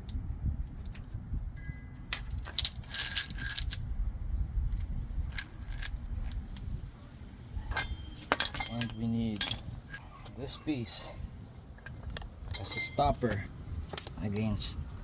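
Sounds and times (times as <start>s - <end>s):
low steady rumble: 0.0s - 10.1s
steel discs clinking: 0.8s - 3.8s, 5.3s - 6.7s, 7.7s - 10.0s, 12.5s - 14.5s.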